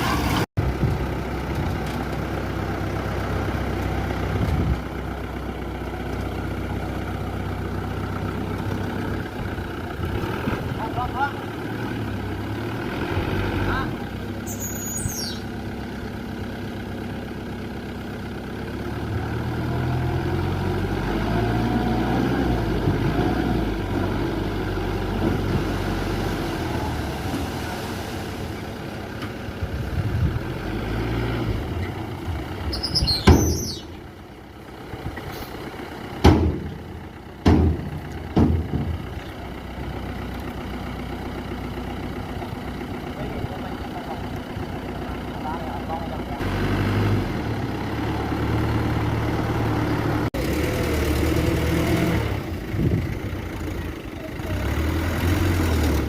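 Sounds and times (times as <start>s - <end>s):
diesel earthmoving machinery: 0.0s - 56.0s
high falling squeal: 14.5s - 15.4s, 32.7s - 33.9s.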